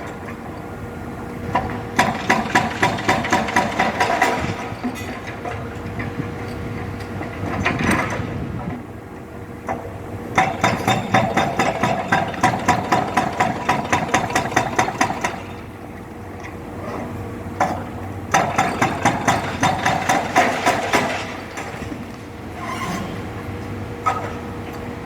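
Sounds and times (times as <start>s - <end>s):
demolition hammer pounding concrete: 1.5s - 6.2s, 9.8s - 15.8s, 17.5s - 22.5s.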